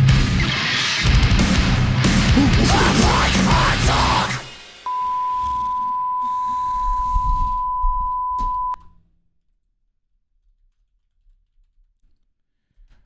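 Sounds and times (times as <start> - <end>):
steady electronic beep tone: 4.9 - 8.8.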